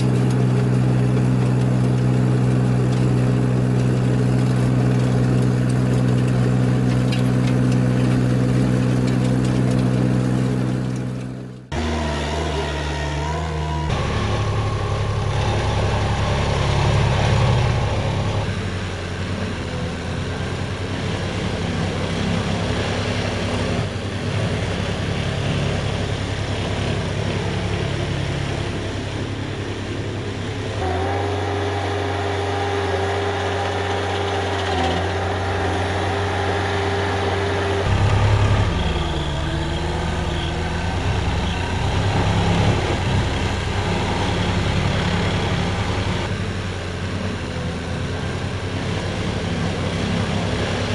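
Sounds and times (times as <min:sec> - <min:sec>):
construction machine engines running: 0:00.0 - 0:50.9
steady whine: 0:08.8 - 0:20.2, 0:24.8 - 0:46.9.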